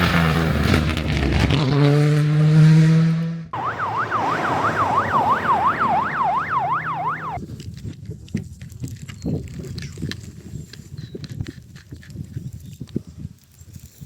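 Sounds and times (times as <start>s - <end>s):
car engine revving high: 3.6s - 7.4s
engine running: 3.6s - 7.4s
vehicle siren sweeping: 3.6s - 7.4s.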